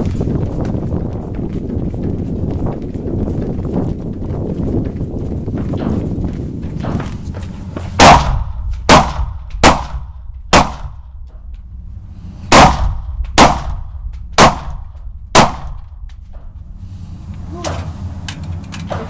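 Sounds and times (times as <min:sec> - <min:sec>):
rifle shots with echo: 0:08.0 - 0:11.2, 0:12.5 - 0:15.9.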